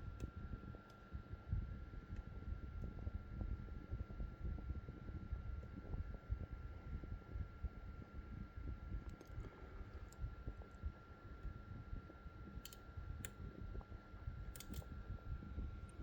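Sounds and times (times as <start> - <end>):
faint steady whine: 0.0 - 16.0
faint metallic lock picking clicks: 14.5 - 14.9.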